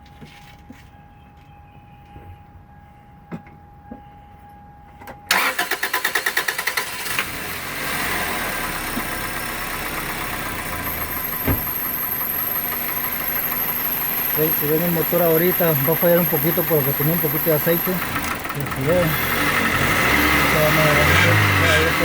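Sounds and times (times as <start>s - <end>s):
car engine starting and idling: 5.3s - 22.0s.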